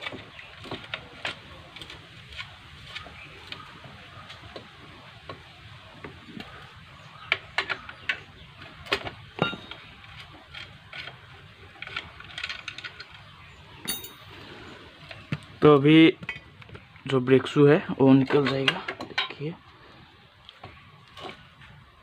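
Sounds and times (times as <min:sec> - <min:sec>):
metallic clinks of spanner and parts: 0:13.8 - 0:14.3.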